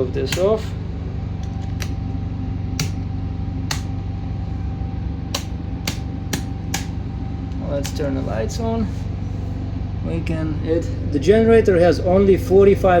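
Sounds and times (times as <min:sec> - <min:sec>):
electrical switches clicking: 0:00.0 - 0:00.8, 0:01.4 - 0:02.2, 0:02.8 - 0:03.1, 0:03.7 - 0:04.1, 0:05.3 - 0:08.2
low mechanical hum: 0:00.0 - 0:13.0.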